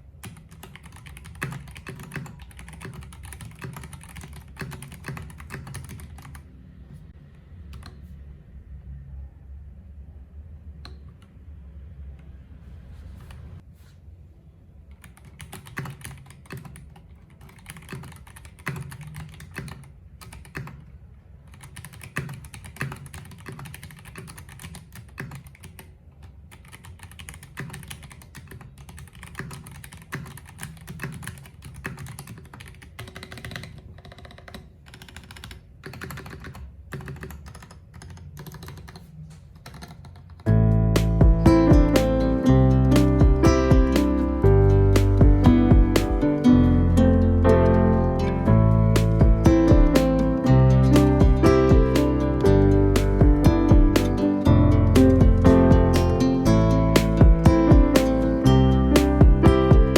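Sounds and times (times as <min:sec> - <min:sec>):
guitar music: 0:40.5 - 0:59.9.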